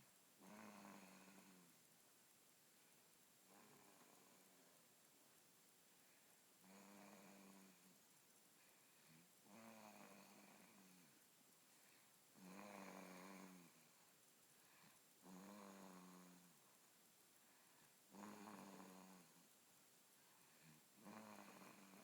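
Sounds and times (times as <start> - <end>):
rhythmic snoring: 0.4 - 1.8, 3.5 - 4.7, 6.6 - 8.0, 9.1 - 11.2, 12.4 - 14.0, 15.2 - 16.6, 18.1 - 19.4, 20.6 - 22.0.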